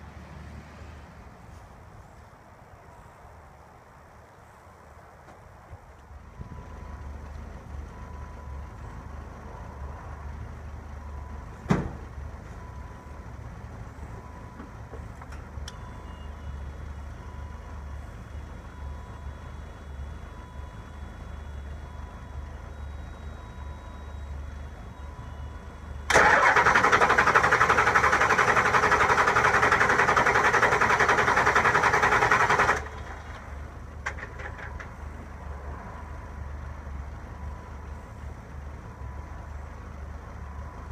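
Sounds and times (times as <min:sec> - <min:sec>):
diesel engine cranking on starter: 0:26.0 - 0:35.2.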